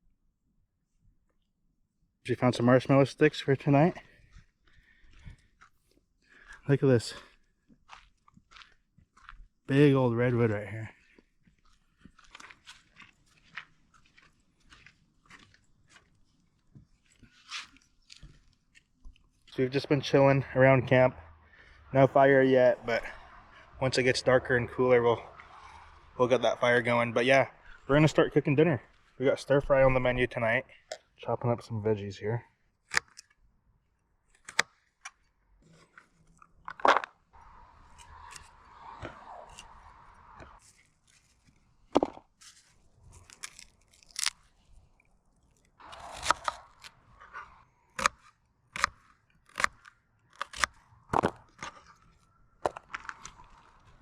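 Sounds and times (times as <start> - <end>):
crunching and scraping: 3.7 - 20.2, 34.2 - 54.0
faint crunches and rustles: 40.5 - 47.4, 51.4 - 54.0.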